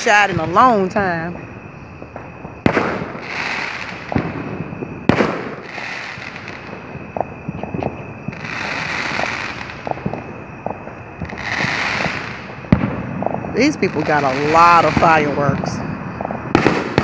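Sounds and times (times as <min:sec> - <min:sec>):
firework bangs and booms: 0:00.0 - 0:17.0
firework crackling hiss: 0:00.0 - 0:17.0
small firework pops: 0:02.0 - 0:13.6, 0:15.5 - 0:17.0.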